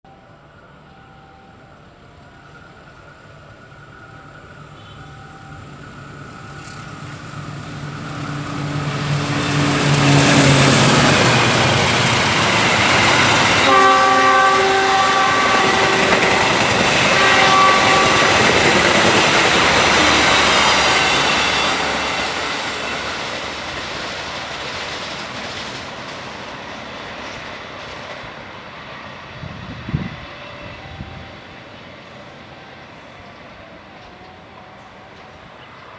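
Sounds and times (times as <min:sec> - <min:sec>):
train rumbling past: 0:00.1 - 0:35.9
multi-tone train horn: 0:04.0 - 0:06.8, 0:12.6 - 0:22.8, 0:29.4 - 0:31.6, 0:32.4 - 0:35.9.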